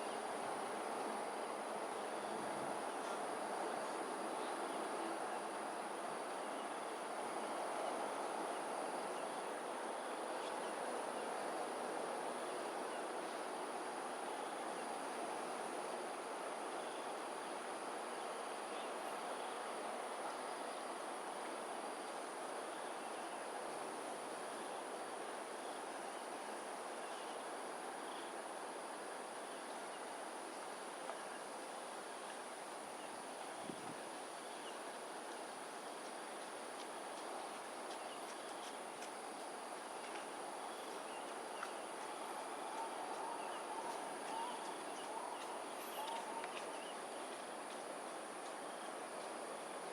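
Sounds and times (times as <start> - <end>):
insects trilling: 37.9 - 47.5.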